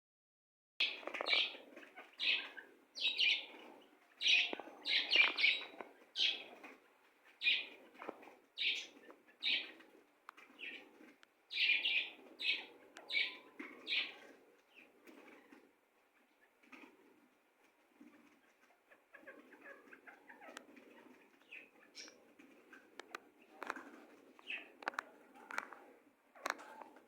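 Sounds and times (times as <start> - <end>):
bird chirping: 0.8 - 9.8, 10.4 - 15.6, 18.4 - 25.7.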